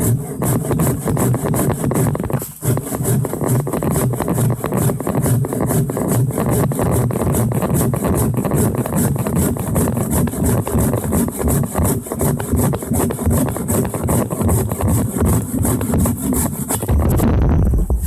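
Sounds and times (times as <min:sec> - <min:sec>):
hand saw cutting wood: 0:00.0 - 0:17.2
low rumble: 0:16.9 - 0:18.0.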